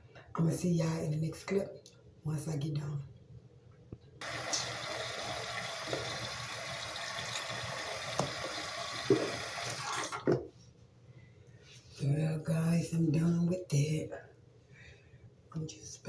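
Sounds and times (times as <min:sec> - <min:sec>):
tap water running into sink: 0:04.2 - 0:10.4.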